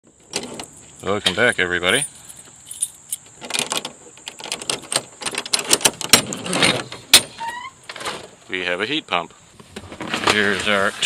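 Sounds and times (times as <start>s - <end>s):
objects clattering and rustling: 0.1s - 8.5s, 9.6s - 11.0s
short squeak: 7.3s - 7.8s.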